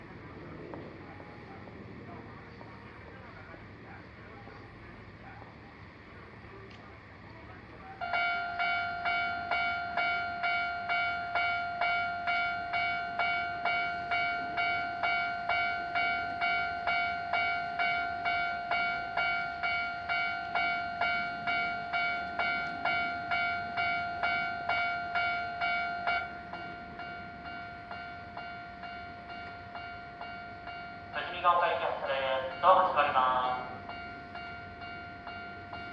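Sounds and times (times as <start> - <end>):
railroad crossing bell ringing: 7.4 - 35.9.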